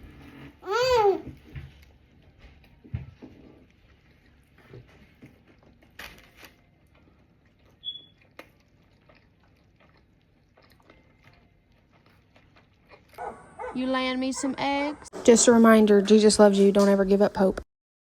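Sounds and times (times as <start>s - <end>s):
chewing: 1.7s - 15.4s
short high squeak: 7.8s - 8.1s.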